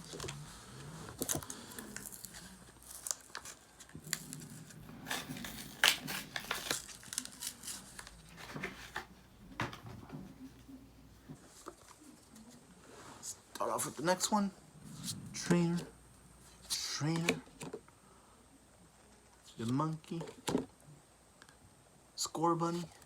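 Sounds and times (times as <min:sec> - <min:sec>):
wrapper crinkling and tearing: 0:01.2 - 0:09.1.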